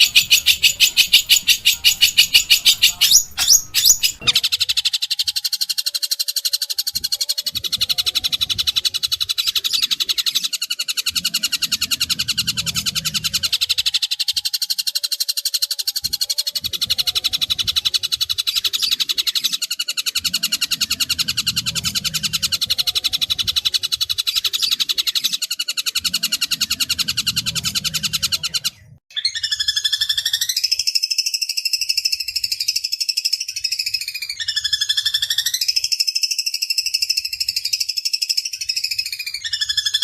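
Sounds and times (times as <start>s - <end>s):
louder bird call: 0.0s - 5.0s
bird harsh rapid chattering: 0.0s - 40.0s.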